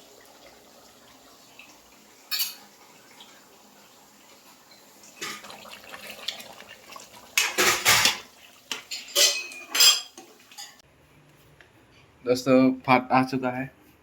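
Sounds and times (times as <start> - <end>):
dishes and cutlery clattering: 2.3 - 2.7, 7.4 - 10.8.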